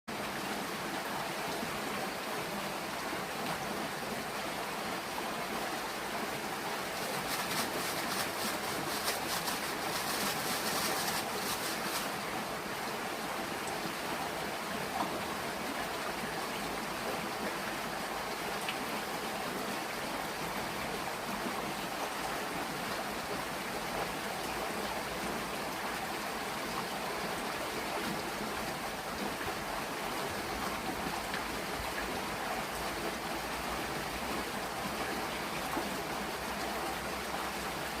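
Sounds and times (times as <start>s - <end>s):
stream water rushing: 0.1s - 38.0s.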